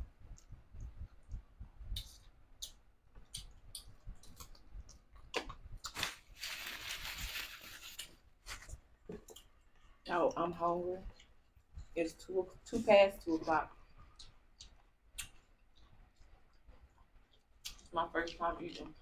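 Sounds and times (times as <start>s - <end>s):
chewing crispy fried fish: 0.4s - 10.0s, 13.7s - 19.0s.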